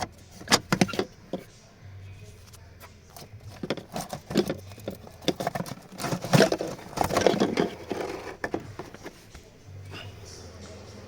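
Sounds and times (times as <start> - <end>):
hands handling plastic parts: 0.0 - 1.5, 2.3 - 9.4.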